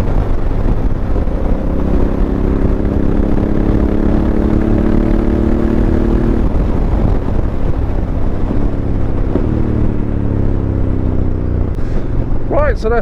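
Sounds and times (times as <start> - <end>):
motorcycle engine running: 0.0 - 13.0
wind noise: 0.0 - 13.0.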